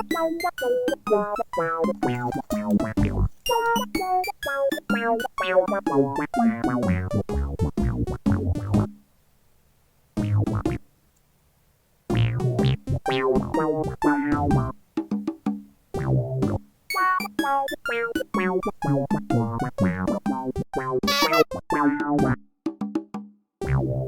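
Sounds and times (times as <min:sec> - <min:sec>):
synthesizer and electric piano music: 0:00.0 - 0:08.8.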